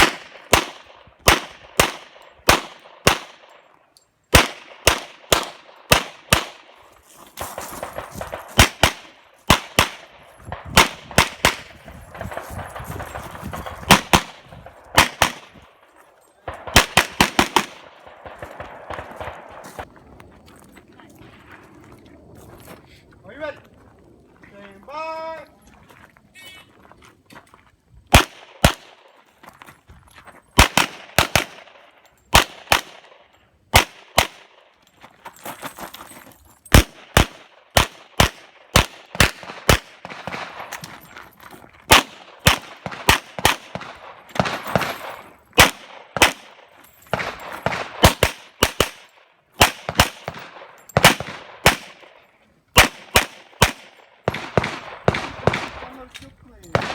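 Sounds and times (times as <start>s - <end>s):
handgun shots: 7.5s - 15.6s, 41.9s - 52.1s, 52.8s - 56.0s.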